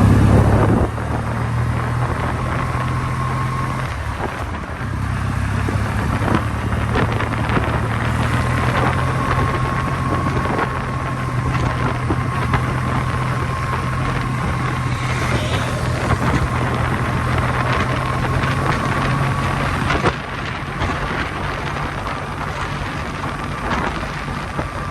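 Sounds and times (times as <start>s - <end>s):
motorcycle engine running: 0.0s - 24.9s
wind and road noise: 0.0s - 24.9s.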